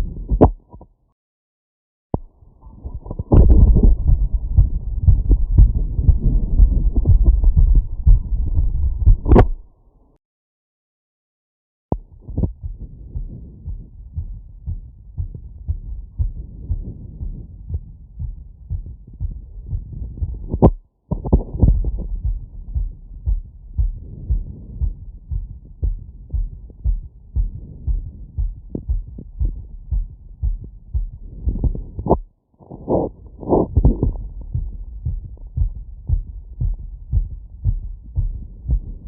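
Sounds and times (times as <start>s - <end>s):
fast heartbeat thuds: 2.2s - 9.7s, 11.9s - 39.0s
sharp click: 9.2s - 9.6s.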